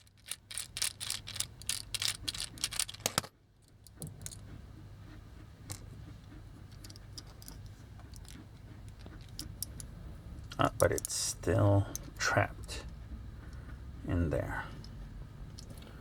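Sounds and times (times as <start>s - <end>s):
toy parts clicking and rattling: 0.0s - 4.4s, 6.7s - 11.3s.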